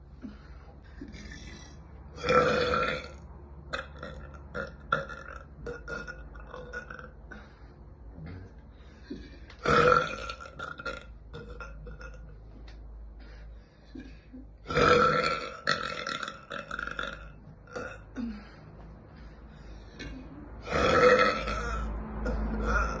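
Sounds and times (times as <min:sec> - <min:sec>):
woman burping: 0:01.0 - 0:07.4, 0:09.1 - 0:12.3, 0:14.0 - 0:18.5, 0:20.0 - 0:21.9.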